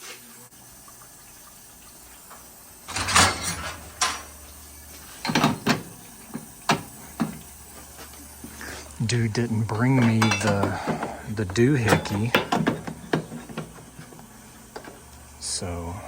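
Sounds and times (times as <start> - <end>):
hard objects knocking and clattering: 5.2 - 7.5, 9.3 - 15.3.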